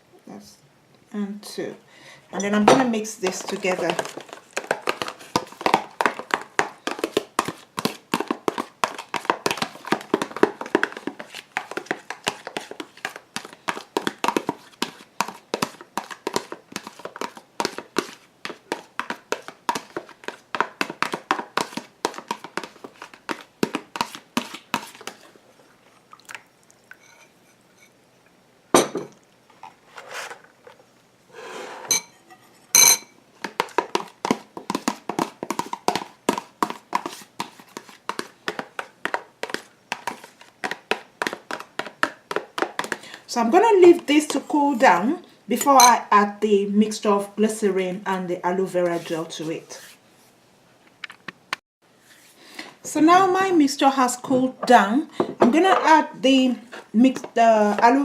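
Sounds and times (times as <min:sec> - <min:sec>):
stirring in a bowl: 0:02.4 - 0:27.9, 0:33.4 - 0:46.1, 0:48.6 - 0:50.0, 0:54.3 - 0:58.0.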